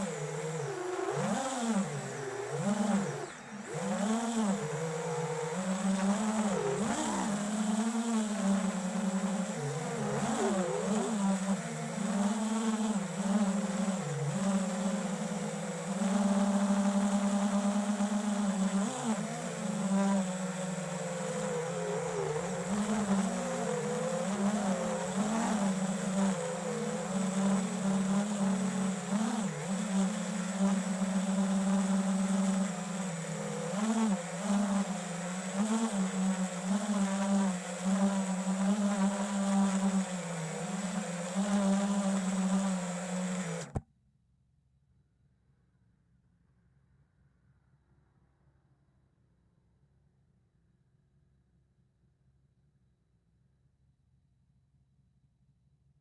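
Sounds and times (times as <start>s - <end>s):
quadcopter motors buzzing: 0.0s - 43.8s.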